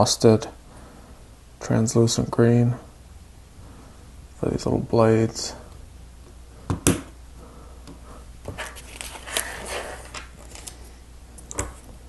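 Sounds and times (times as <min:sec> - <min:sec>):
rustling of plastic pieces: 0:08.5 - 0:10.9.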